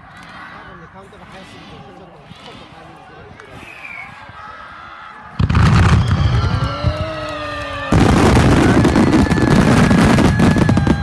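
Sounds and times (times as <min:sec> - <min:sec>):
fireworks booming: 0:05.4 - 0:07.2, 0:07.8 - 0:11.0
fireworks crackling: 0:05.4 - 0:11.0.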